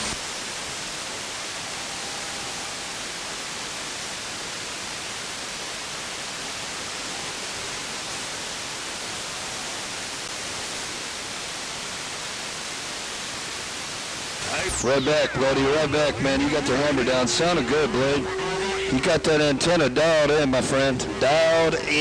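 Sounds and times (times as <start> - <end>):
radio static hiss: 0.0 - 22.0
faint steady whistle: 1.6 - 3.3.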